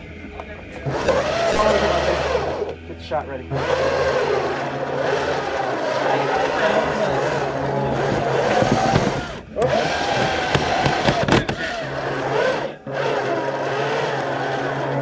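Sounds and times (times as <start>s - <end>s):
rc car motor whining: 0.0s - 15.0s.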